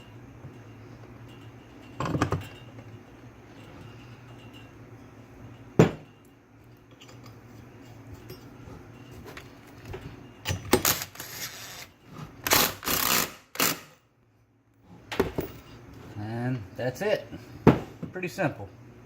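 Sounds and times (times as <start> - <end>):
metal tools clinking and rattling: 0.0 - 4.8, 5.4 - 13.2
low steady hum: 0.0 - 19.0.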